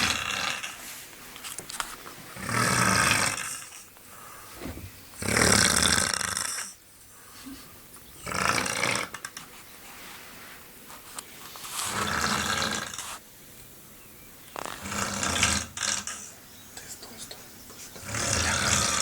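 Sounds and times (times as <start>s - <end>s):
man snoring: 0.0s - 0.8s, 2.4s - 3.8s, 5.2s - 6.8s, 8.2s - 9.2s, 11.9s - 13.0s, 14.7s - 16.3s, 18.0s - 19.0s.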